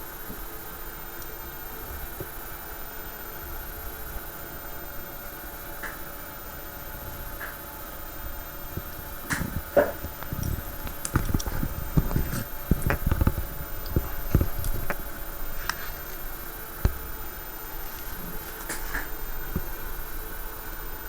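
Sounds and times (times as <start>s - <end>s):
faint steady hum: 0.0s - 21.0s
objects being handled: 9.3s - 16.3s.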